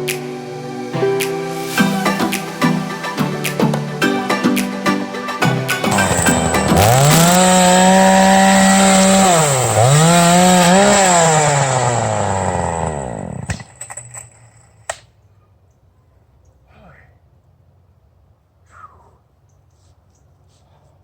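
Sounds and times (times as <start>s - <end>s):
chainsaw engine revving: 5.9s - 14.8s.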